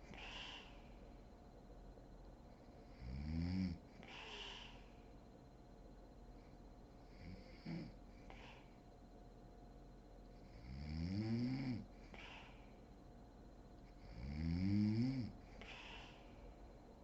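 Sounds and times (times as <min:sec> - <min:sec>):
breathy exhale: 0:00.0 - 0:01.0, 0:04.0 - 0:05.0, 0:12.1 - 0:12.8, 0:15.6 - 0:16.5
woman snoring: 0:10.7 - 0:11.9, 0:14.2 - 0:15.4.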